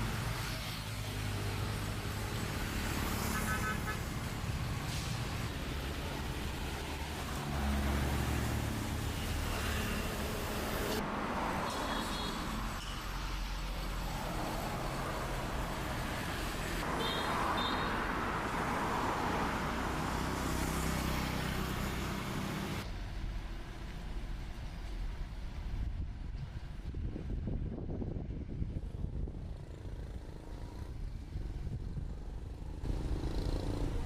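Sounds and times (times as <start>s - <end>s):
road traffic: 0.0s - 34.0s.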